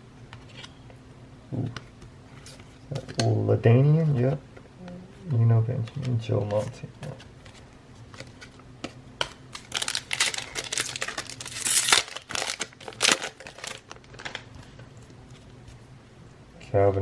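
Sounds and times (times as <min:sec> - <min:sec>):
wrapper tearing and crinkling: 0:09.5 - 0:14.6.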